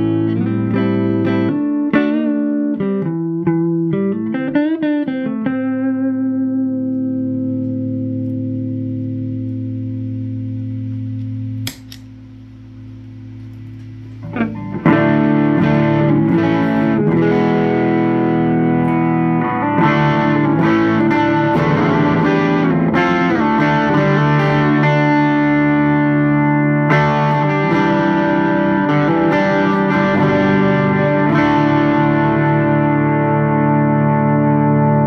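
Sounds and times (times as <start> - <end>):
overdriven electric guitar riffing: 0.0 - 35.0
low amp hum: 6.0 - 35.0
guitar slide: 13.2 - 35.0.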